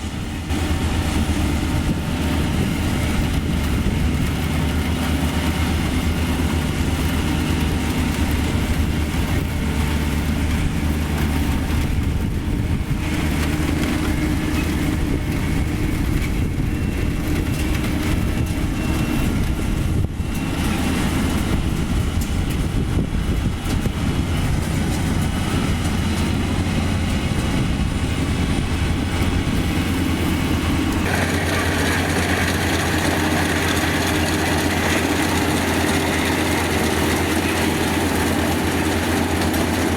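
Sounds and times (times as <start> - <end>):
combine harvester engine running: 0.0 - 39.9
harsh high-pitched machine noise: 31.0 - 39.5.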